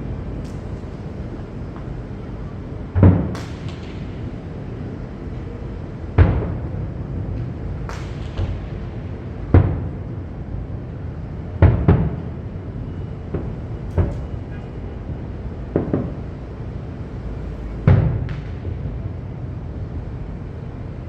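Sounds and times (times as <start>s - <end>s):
fireworks booming: 0.0s - 10.1s, 15.7s - 19.0s
steady low rumble: 0.0s - 21.0s.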